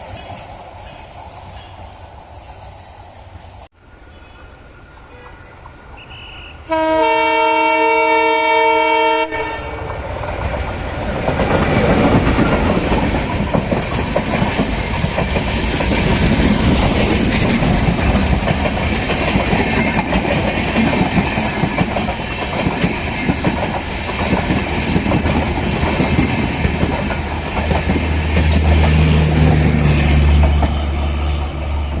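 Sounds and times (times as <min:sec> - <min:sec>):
multi-tone train horn: 0:05.1 - 0:10.0
train wheels clattering over rail joints: 0:10.2 - 0:32.0.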